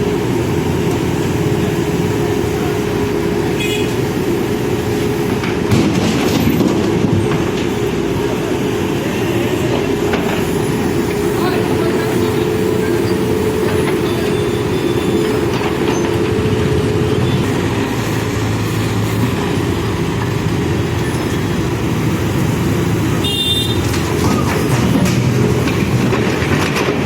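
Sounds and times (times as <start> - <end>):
diesel engine running: 0.0 - 27.0
high squeal: 12.9 - 16.2.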